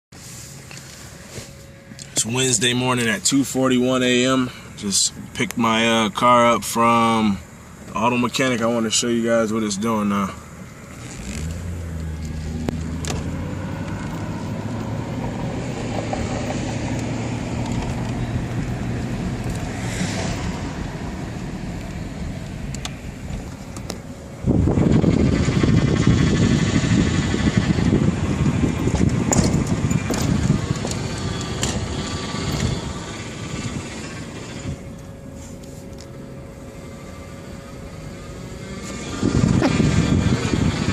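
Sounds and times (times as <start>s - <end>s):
car engine running: 0.2s - 40.9s
loud rough mechanical noise: 10.4s - 40.9s.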